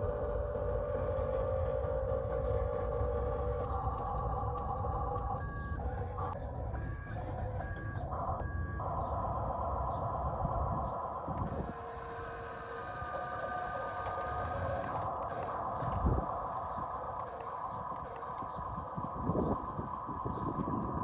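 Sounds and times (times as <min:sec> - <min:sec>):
electronic engine hum: 0:00.0 - 0:21.0
toy vehicle reversing beeper: 0:03.4 - 0:10.0.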